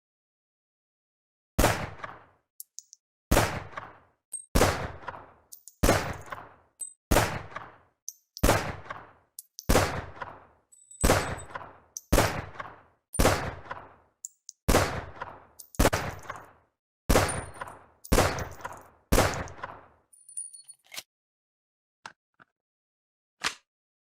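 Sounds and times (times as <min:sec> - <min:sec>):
pistol shots with echo: 0:01.6 - 0:02.4, 0:03.3 - 0:20.0.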